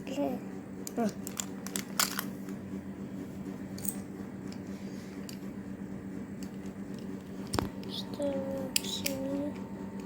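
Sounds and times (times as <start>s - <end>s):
low hum: 0.0s - 10.0s
plastic toy parts clicking: 0.8s - 2.3s.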